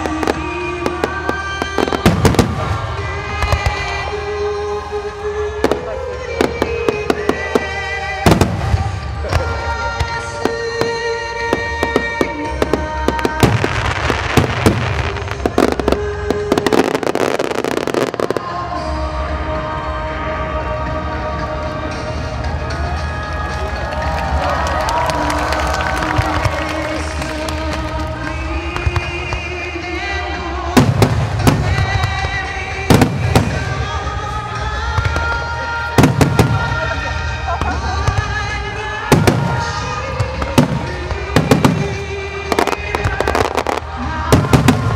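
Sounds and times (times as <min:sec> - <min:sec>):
fireworks bangs and crackles: 0:00.0 - 0:19.6, 0:20.9 - 0:44.9
music with sustained tones: 0:00.0 - 0:44.9.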